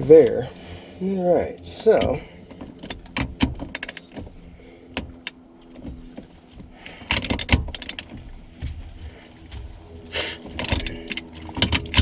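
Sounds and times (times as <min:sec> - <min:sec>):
socket and ratchet clicking: 0:02.8 - 0:04.2, 0:07.1 - 0:08.1, 0:10.6 - 0:12.0.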